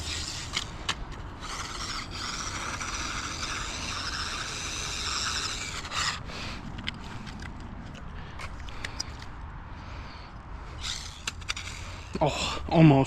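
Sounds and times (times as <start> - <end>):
toy car motor whining: 0.0 - 7.4, 10.7 - 12.6.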